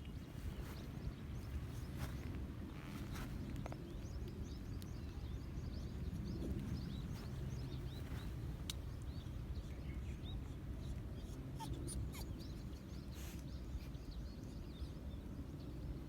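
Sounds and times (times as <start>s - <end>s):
low outdoor rumble: 0.0s - 11.6s
small birds chirping: 0.0s - 15.8s.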